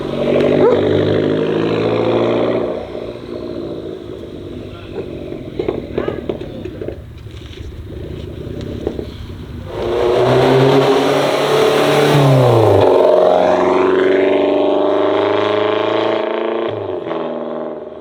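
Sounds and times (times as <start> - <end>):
car exhaust accelerating: 0.0 - 18.0.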